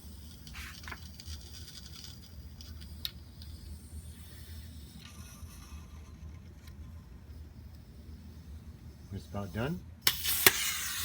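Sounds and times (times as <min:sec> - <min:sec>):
gas inflator hissing: 0:09.1 - 0:11.0.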